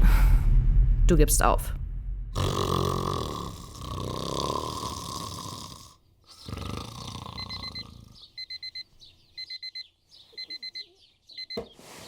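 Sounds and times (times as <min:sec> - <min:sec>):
man snoring: 0:02.4 - 0:08.2
alarm clock beeping: 0:07.4 - 0:11.6.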